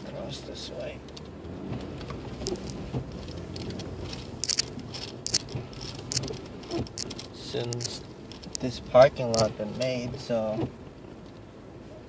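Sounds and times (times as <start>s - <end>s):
tyres crackling and clicking: 1.0s - 10.0s.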